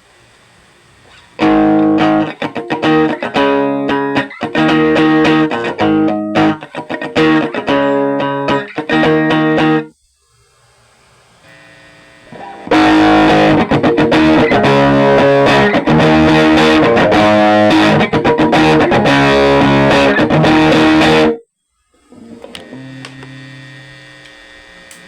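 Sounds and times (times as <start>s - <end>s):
faint amp hum: 0.0s - 25.0s
distorted electric guitar: 1.4s - 9.9s, 11.5s - 21.4s, 22.1s - 23.6s.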